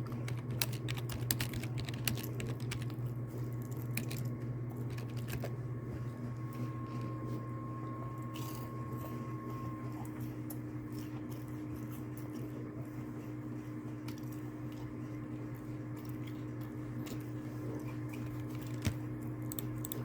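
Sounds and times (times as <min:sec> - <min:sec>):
computer keyboard clicks: 0:00.0 - 0:03.0, 0:03.6 - 0:04.3, 0:04.9 - 0:05.5
low electrical hum: 0:00.0 - 0:20.0.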